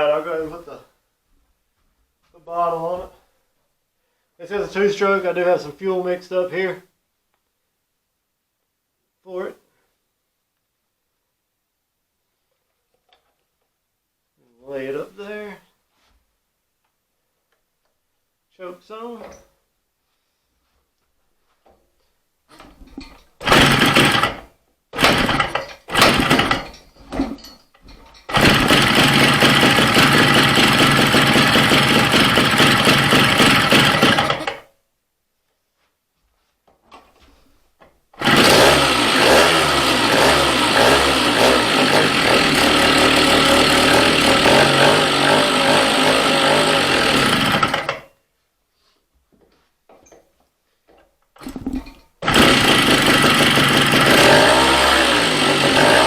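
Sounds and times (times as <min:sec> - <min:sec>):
two-stroke engine starting and revving: 0:23.0 - 0:27.4, 0:28.3 - 0:34.7, 0:38.2 - 0:48.1, 0:51.4 - 0:56.0.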